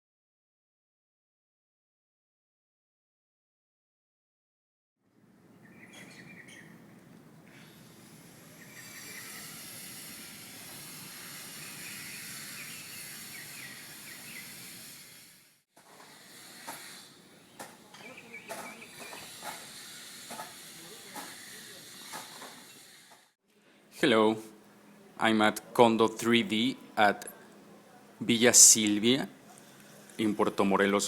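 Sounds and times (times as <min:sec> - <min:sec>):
steady outdoor hiss: 0:05.0 - 0:31.0
bird chirps: 0:05.5 - 0:06.8, 0:11.6 - 0:14.7, 0:17.4 - 0:19.4.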